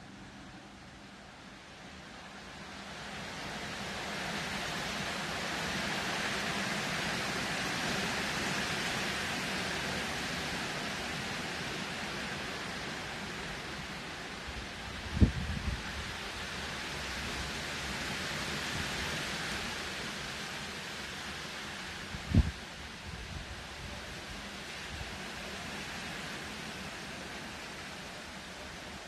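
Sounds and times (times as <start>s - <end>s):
strong wind blowing: 14.6s - 16.2s, 22.1s - 24.2s.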